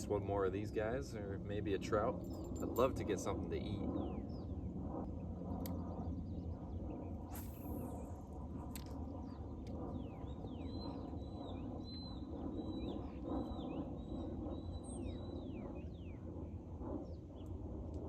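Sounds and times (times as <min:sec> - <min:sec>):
steady low rushing noise: 0:00.0 - 0:18.0
songbird chirping and whistling: 0:10.0 - 0:16.2.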